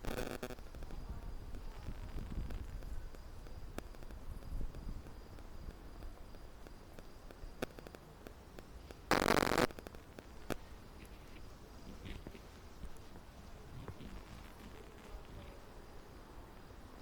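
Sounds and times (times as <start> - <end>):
loud crackling burst: 0.0 - 2.8, 7.3 - 10.6
wind buffeting microphone: 0.6 - 6.6
sharp clicks: 7.0 - 10.6.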